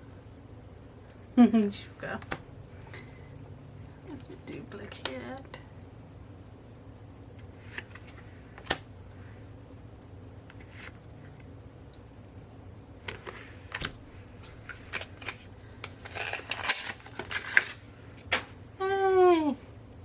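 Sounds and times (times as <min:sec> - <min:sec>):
card packaging crinkling and clicking: 0:13.0 - 0:18.6.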